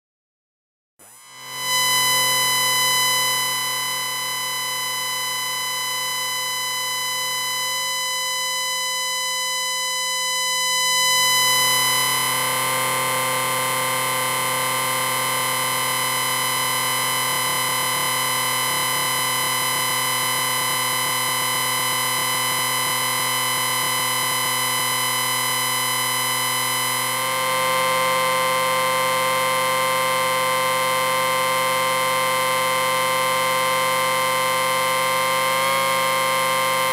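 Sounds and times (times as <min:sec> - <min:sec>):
electronic drone hum: 0:10.7 - 0:36.9.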